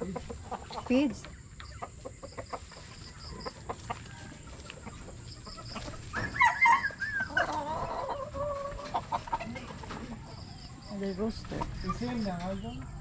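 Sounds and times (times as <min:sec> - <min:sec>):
chickens clucking: 0:00.0 - 0:13.0
chicken drawn-out call: 0:01.9 - 0:10.6.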